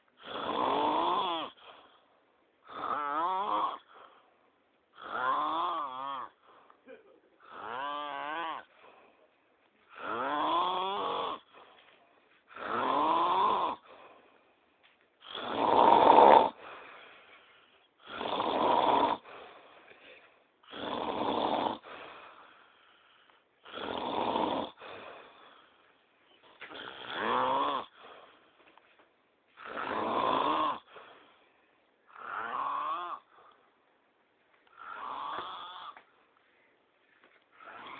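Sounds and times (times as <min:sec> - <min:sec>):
person snoring loudly: 0:00.2 - 0:01.8, 0:02.6 - 0:04.1, 0:05.0 - 0:06.4, 0:07.4 - 0:08.8, 0:09.9 - 0:11.6, 0:12.5 - 0:13.9, 0:15.2 - 0:16.7, 0:18.0 - 0:19.3, 0:20.6 - 0:22.1, 0:23.6 - 0:25.0, 0:26.7 - 0:28.1, 0:29.6 - 0:31.0, 0:32.1 - 0:33.5, 0:34.7 - 0:36.0, 0:37.6 - 0:37.9
faint breathing: 0:08.6 - 0:10.2, 0:13.8 - 0:14.9, 0:16.5 - 0:18.0, 0:19.2 - 0:20.7, 0:21.8 - 0:23.6, 0:24.7 - 0:27.0, 0:27.9 - 0:29.6, 0:30.8 - 0:33.9.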